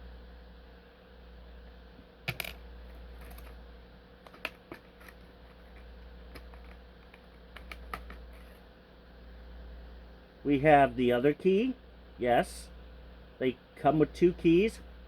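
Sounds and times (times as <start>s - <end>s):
steady low hum: 0.0s - 15.0s
hands handling packaging and keys: 2.3s - 3.6s.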